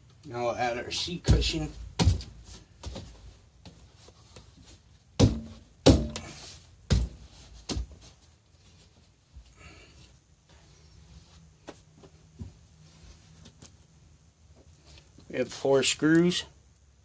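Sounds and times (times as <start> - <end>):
dull thumps and knocks: 1.2 - 3.2, 5.2 - 8.1.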